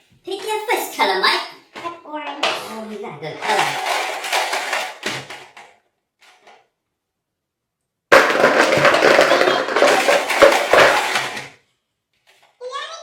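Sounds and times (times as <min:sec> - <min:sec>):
plastic markers clattering: 0:01.8 - 0:06.6.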